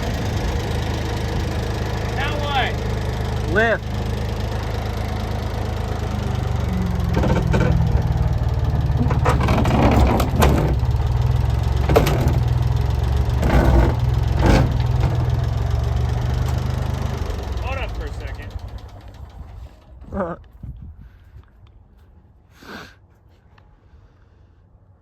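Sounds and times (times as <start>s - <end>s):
loader engine running: 0.0s - 20.1s
metal clunks and knocks: 6.5s - 15.6s.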